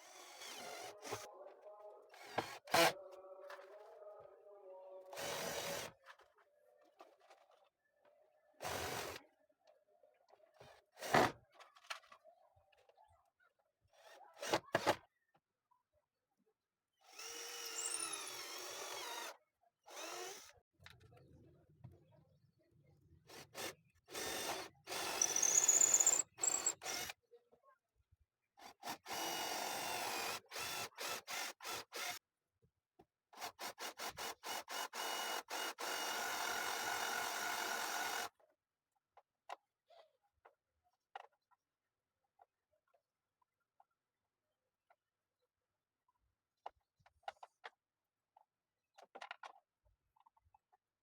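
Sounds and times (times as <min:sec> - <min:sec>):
electric drill motor whining: 0:00.0 - 0:01.2, 0:02.2 - 0:03.0, 0:17.1 - 0:19.3, 0:19.9 - 0:20.5, 0:24.2 - 0:27.1, 0:29.1 - 0:32.2, 0:34.4 - 0:38.3.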